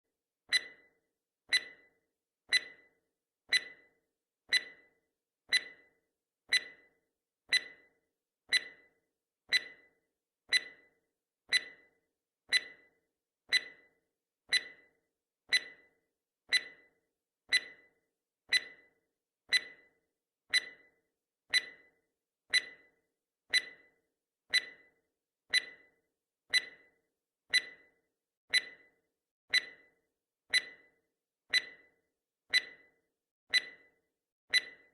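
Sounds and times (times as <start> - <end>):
clock ticking: 0.5 - 0.8, 1.5 - 1.8, 2.5 - 2.8, 3.5 - 3.8, 4.5 - 4.8, 5.5 - 5.8, 6.5 - 6.8, 7.5 - 7.9, 8.5 - 8.8, 9.5 - 9.8, 10.5 - 10.8, 11.5 - 11.8, 12.5 - 12.8, 13.5 - 13.8, 14.5 - 14.8, 15.5 - 15.8, 16.5 - 16.9, 17.5 - 17.8, 18.5 - 18.8, 19.5 - 19.8, 21.5 - 21.8, 28.5 - 28.8, 29.5 - 29.8, 30.5 - 30.8, 31.5 - 31.9, 32.5 - 33.9, 34.5 - 34.9.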